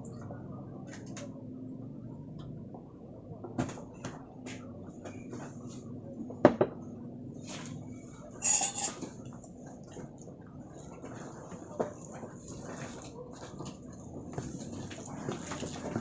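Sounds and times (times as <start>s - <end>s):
low steady hum: 0.0s - 16.0s
cutlery clinking against plate: 8.4s - 9.1s.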